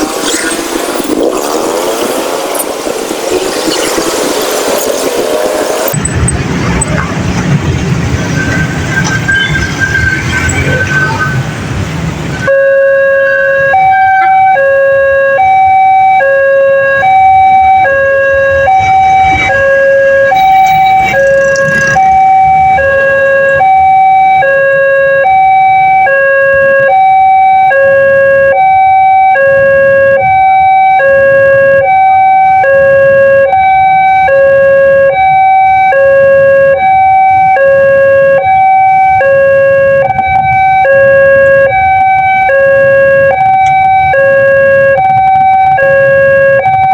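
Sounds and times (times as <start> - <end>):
two-tone level crossing siren: 12.4 - 46.9.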